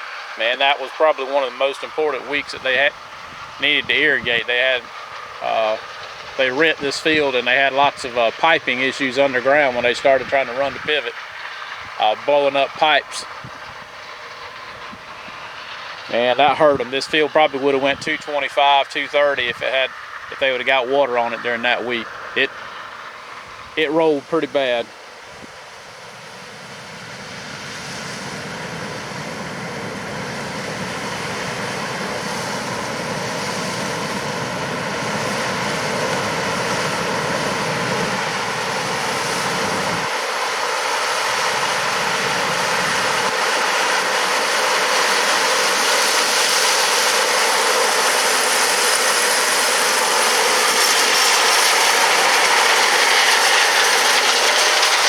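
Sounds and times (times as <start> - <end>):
combine harvester running: 0.0 - 55.0.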